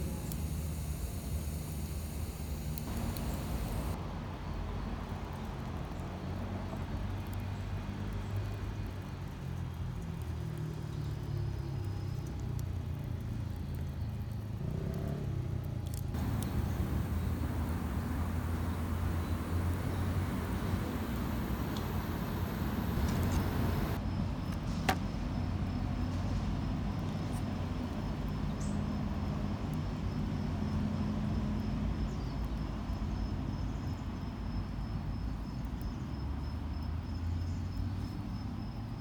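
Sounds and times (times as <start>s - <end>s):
bright hiss: 0.0s - 4.0s, 16.2s - 24.0s
road traffic rumble: 0.0s - 4.0s, 16.2s - 24.0s.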